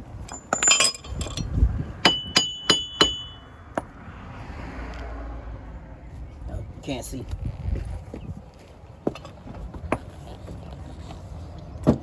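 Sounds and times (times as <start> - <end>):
metal tools clinking: 0.2 - 1.5, 2.1 - 3.4
sharp ringing metal taps: 0.3 - 3.9.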